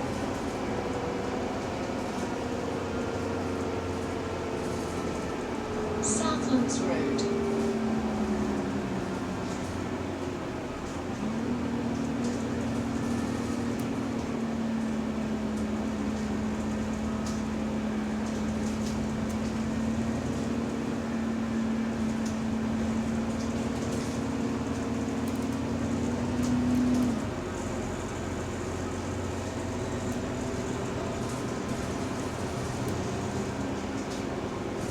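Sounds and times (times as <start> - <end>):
bus road and drivetrain noise: 0.0 - 34.9
steady whine: 4.6 - 10.9.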